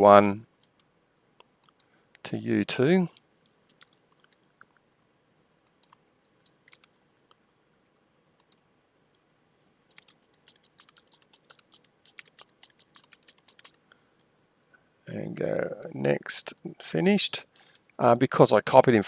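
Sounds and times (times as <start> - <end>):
keyboard typing: 0.6 - 0.9, 1.6 - 1.9, 3.4 - 4.8, 5.6 - 7.4, 8.4 - 8.6, 9.9 - 13.8
computer mouse and key clicks: 0.6 - 1.9, 3.1 - 4.9, 5.6 - 8.6, 9.9 - 13.8.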